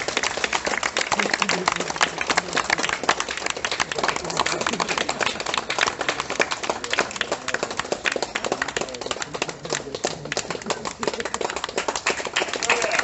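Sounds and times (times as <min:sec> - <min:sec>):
crowd clapping: 0:00.0 - 0:13.0.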